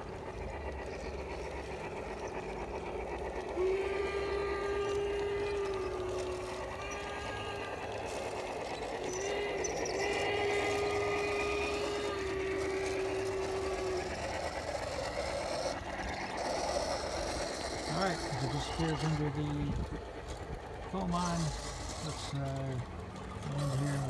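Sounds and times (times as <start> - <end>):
model train running: 0.0 - 24.0
steam whistle: 3.4 - 19.5.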